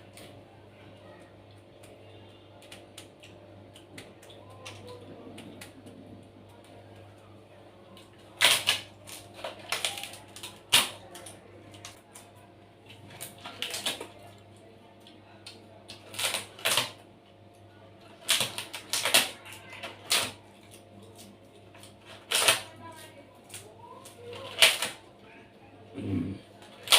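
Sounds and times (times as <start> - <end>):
crunching crispy snacks: 7.9 - 14.3, 15.4 - 17.0, 18.0 - 25.0, 26.6 - 26.9.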